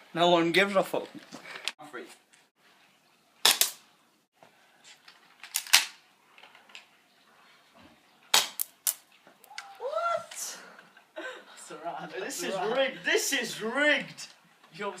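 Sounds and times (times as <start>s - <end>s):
bb gun shots cracking: 8.3s - 9.0s.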